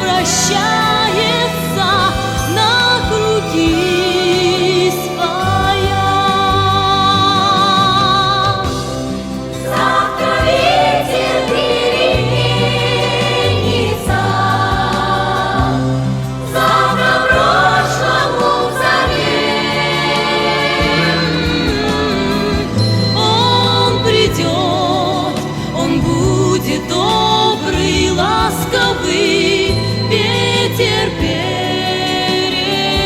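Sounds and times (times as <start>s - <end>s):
slow waltz music: 0.0s - 33.0s
sustained bass notes: 5.6s - 31.8s
voices singing long notes: 9.5s - 33.0s.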